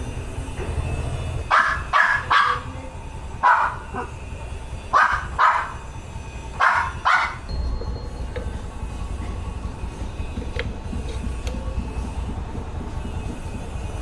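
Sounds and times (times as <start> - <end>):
steady low rumble: 0.0 - 14.0
dog barking: 1.5 - 2.8, 3.4 - 4.2, 4.9 - 5.9, 6.5 - 7.5.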